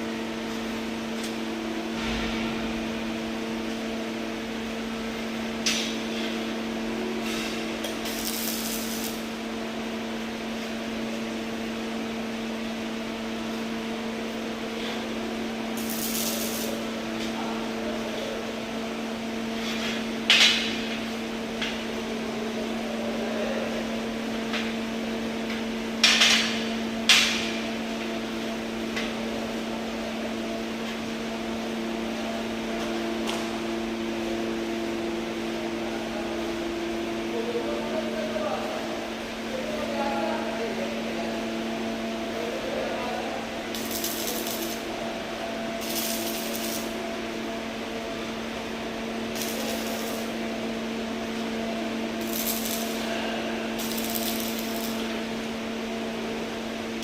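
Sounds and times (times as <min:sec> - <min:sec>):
steady low hum: 0:00.0 - 0:57.0
short hissing bursts: 0:15.8 - 0:16.8.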